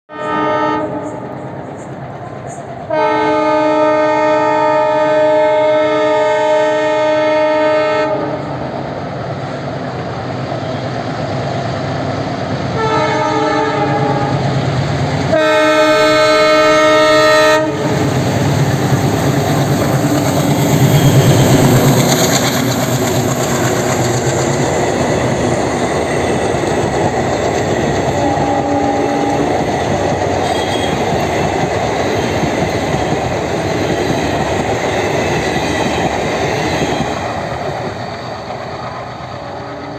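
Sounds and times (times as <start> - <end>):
locomotive air horn: 0.1 - 1.3, 2.9 - 8.6, 12.8 - 14.5, 15.3 - 18.1, 28.2 - 29.6, 30.3 - 31.1, 39.4 - 39.9
diesel locomotive engine chugging: 0.2 - 39.9
train wheels clattering: 17.6 - 39.9.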